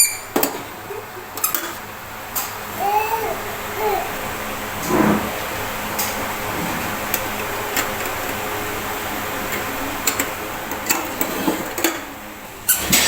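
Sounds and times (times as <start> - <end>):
steady background hum: 0.0 - 13.0.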